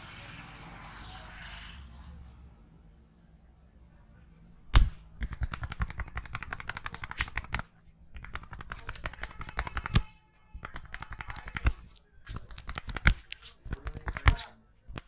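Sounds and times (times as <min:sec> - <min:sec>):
hands slapping and tapping head: 0:04.7 - 0:15.0.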